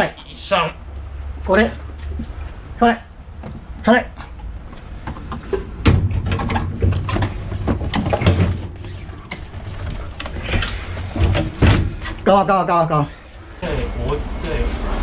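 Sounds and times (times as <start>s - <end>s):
knocks and clatter: 4.4s - 12.3s.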